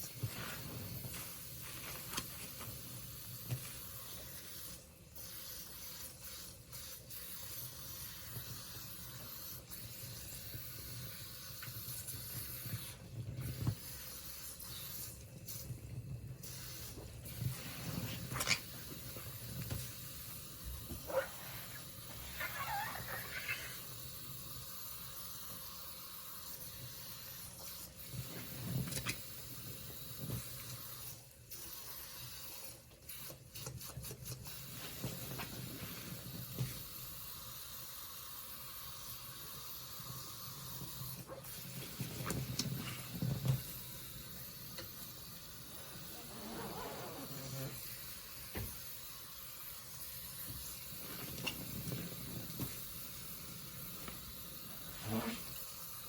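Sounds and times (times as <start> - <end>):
soapy sponge squelching: 21.1 - 23.8.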